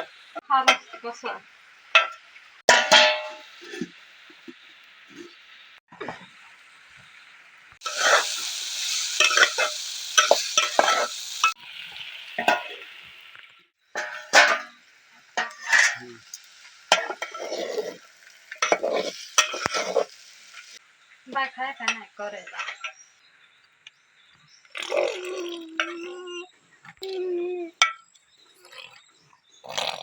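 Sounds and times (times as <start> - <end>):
vegetables sizzling in a pan: 0.0 - 23.5
spatula scraping and clinking pan: 2.0 - 3.9, 7.8 - 8.4, 9.1 - 11.6, 14.0 - 14.8, 15.4 - 20.8, 21.9 - 23.1.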